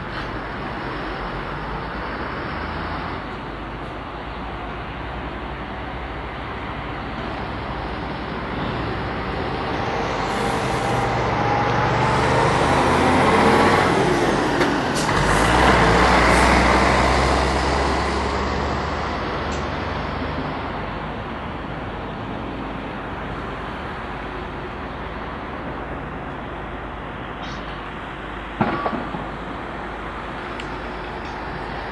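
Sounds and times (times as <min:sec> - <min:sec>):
heavy vehicle passing: 0:06.5 - 0:21.4.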